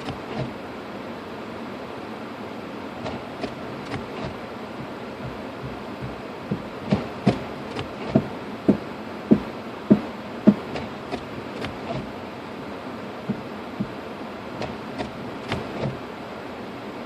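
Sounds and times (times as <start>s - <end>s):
car road and cabin noise: 0.0s - 17.0s
short knocks: 3.0s - 12.2s.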